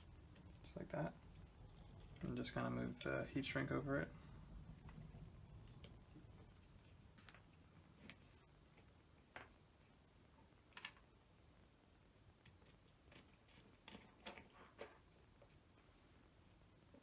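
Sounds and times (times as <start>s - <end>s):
faint clicks and taps of wires: 0.2s - 3.2s, 4.6s - 9.7s, 10.4s - 11.1s, 12.4s - 15.9s.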